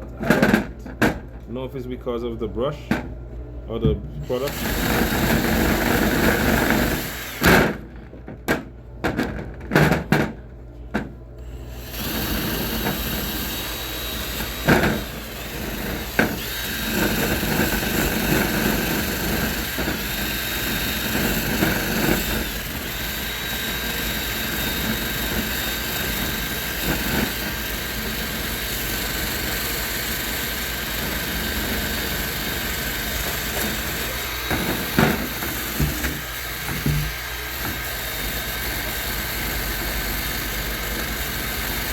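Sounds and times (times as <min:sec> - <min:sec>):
power drill with wire brush: 0:04.5 - 0:07.5, 0:11.8 - 0:41.9.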